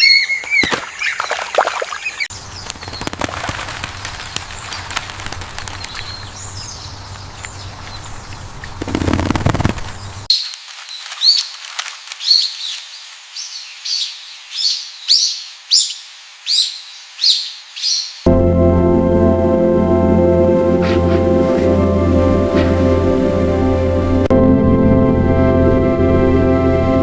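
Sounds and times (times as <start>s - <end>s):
small birds chirping: 0.0s - 18.3s
background hiss: 2.4s - 18.3s.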